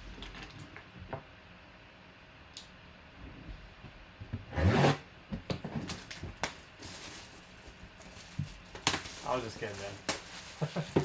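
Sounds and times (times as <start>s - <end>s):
packaging tearing: 5.9s - 11.0s.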